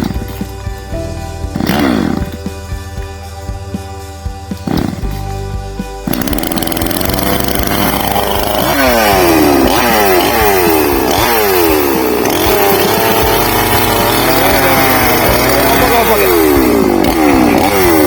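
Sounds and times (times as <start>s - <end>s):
chainsaw revving: 0.0s - 0.4s, 1.5s - 2.5s, 4.6s - 5.2s, 6.0s - 18.0s.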